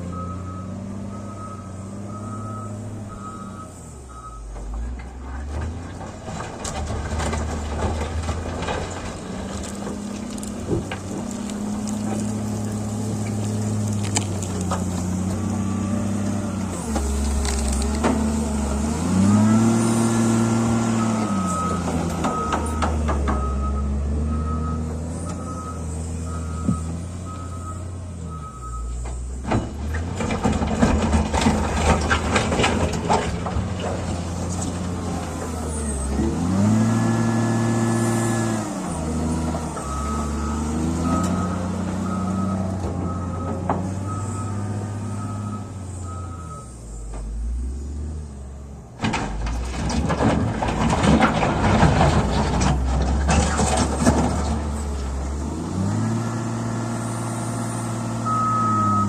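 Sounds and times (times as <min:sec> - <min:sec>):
diesel engine revving: 0:00.0 - 0:59.0
reversing alarm beeping: 0:00.1 - 0:04.6, 0:20.9 - 0:29.4, 0:39.7 - 0:47.4, 0:58.1 - 0:59.0
loud clattering and rattling: 0:49.0 - 0:54.7.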